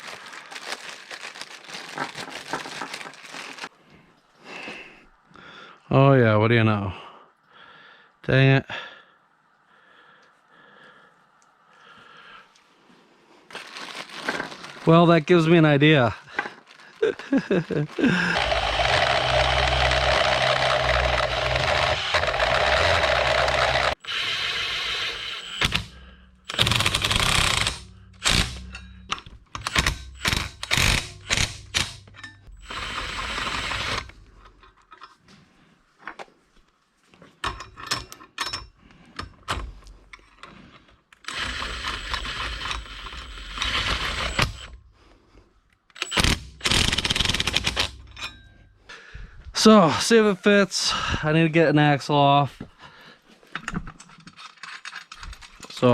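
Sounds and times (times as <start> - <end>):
power tool running: 18.1 - 28.6, 29.6 - 34.3, 41.2 - 44.8, 46.0 - 48.1.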